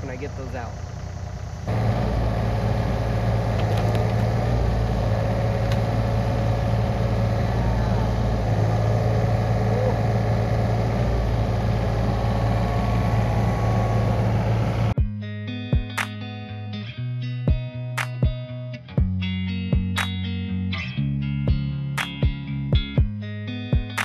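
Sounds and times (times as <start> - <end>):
diesel engine running steadily: 0.0 - 15.0.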